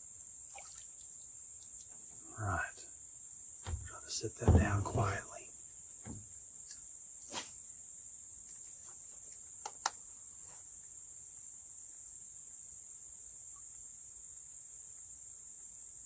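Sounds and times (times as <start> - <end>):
high-pitched insect chorus: 1.2 - 3.2
light knocks: 3.7 - 5.4, 6.1 - 6.3.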